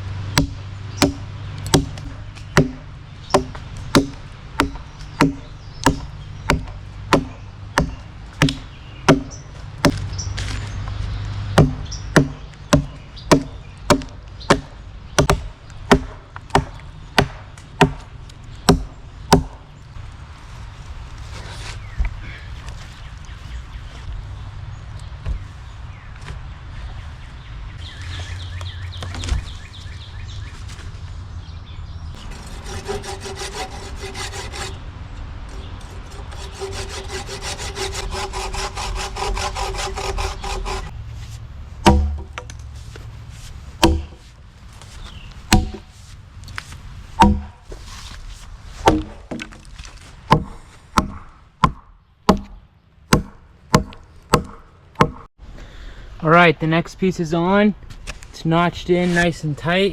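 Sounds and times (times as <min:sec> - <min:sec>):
sharp strikes on wood: 0:00.4 - 0:10.1, 0:11.6 - 0:18.1, 0:18.7 - 0:19.6, 0:41.8 - 0:42.6, 0:43.8 - 0:44.3, 0:45.5 - 0:45.9, 0:47.2 - 0:47.7, 0:48.8 - 0:49.7, 0:50.3 - 0:55.3
hand saw cutting log: 0:00.4 - 0:10.2, 0:11.6 - 0:18.1, 0:32.2 - 0:34.8, 0:35.5 - 0:40.9, 0:41.8 - 0:42.5, 0:43.8 - 0:44.2, 0:45.5 - 0:45.9.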